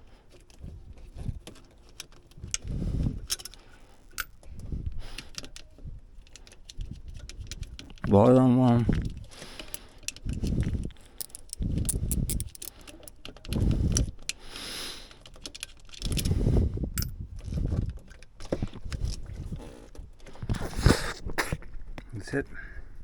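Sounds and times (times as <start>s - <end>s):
low rumbling handling noise: 8.8s - 14.2s, 16.0s - 17.9s
metallic clinks: 11.0s - 13.2s
ratchet clicking: 11.1s - 13.2s.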